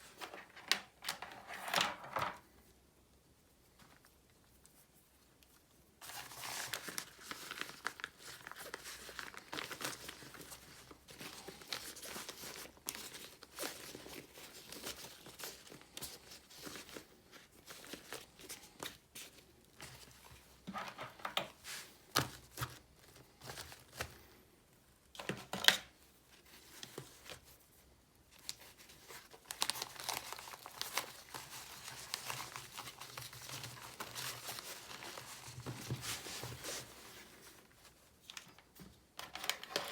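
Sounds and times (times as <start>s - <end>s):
packaging crinkling and tearing: 6.0s - 19.5s, 28.4s - 37.5s.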